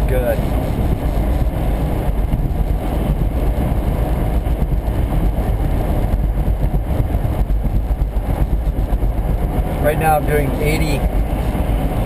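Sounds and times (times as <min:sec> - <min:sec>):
car engine running: 0:00.0 - 0:12.0
tyre and road noise: 0:00.0 - 0:12.0.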